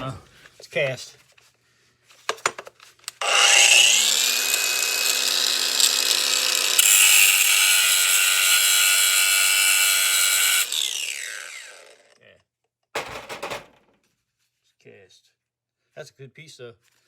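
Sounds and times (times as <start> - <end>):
power tool motor whining: 3.1 - 12.2.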